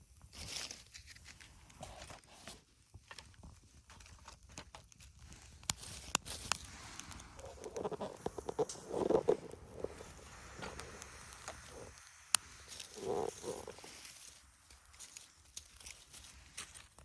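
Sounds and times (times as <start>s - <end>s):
wood fire crackling: 3.0s - 17.0s
sharp pops from fire: 5.2s - 17.0s.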